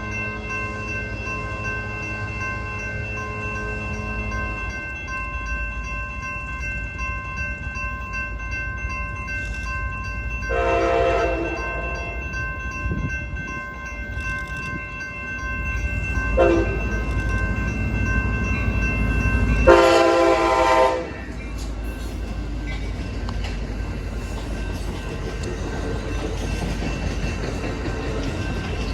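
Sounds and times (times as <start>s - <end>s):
train running rumble: 0.0s - 28.9s
train air horn blasts: 10.5s - 11.9s, 16.4s - 16.8s, 19.7s - 21.2s.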